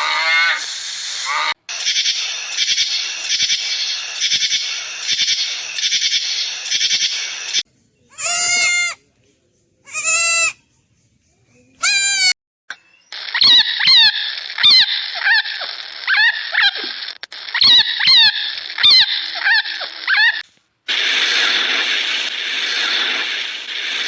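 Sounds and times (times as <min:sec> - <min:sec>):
steady hiss: 0:00.4 - 0:07.6, 0:20.9 - 0:24.0
animal calling: 0:08.1 - 0:09.0, 0:17.5 - 0:20.4
steady rushing noise: 0:20.9 - 0:24.0.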